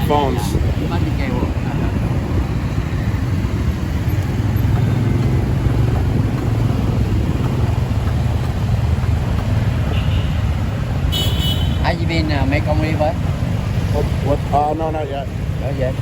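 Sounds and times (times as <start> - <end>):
motorcycle engine running: 0.0 - 11.7
road noise: 0.0 - 16.0.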